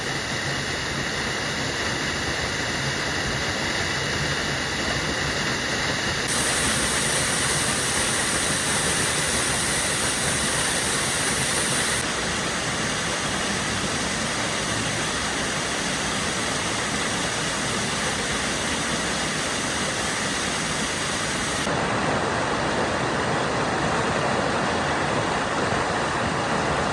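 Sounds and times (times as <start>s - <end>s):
waterfall rushing: 6.3s - 26.9s.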